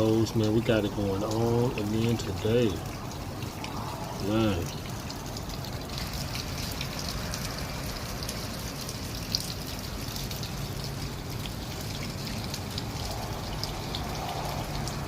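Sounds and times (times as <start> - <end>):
heavy rain rumble: 0.0 - 15.0
raindrops ticking on surfaces: 0.0 - 15.0.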